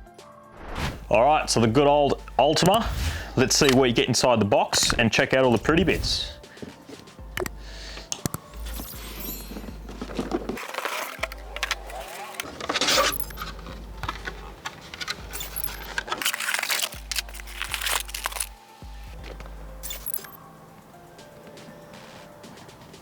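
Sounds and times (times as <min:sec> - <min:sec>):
background music with bass: 0:00.8 - 0:10.6, 0:17.0 - 0:20.4
plastic bags rustling and clinking: 0:08.0 - 0:20.4.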